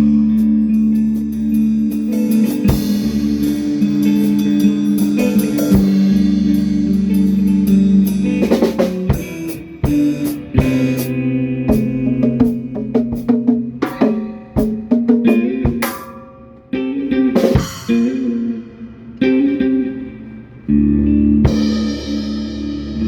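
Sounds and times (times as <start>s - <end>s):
instrumental band music: 0.0s - 23.0s
sharp drum hits: 11.7s - 16.7s.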